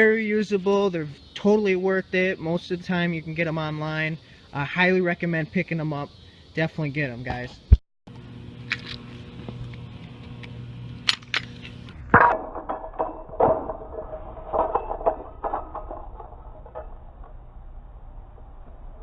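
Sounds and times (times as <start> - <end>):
steady low hum: 6.1 - 19.0.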